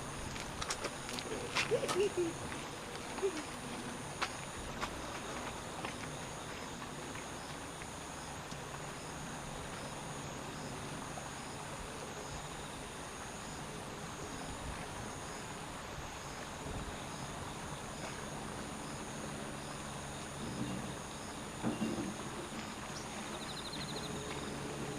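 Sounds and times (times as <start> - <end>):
high-pitched insect trilling: 23.3 - 24.6.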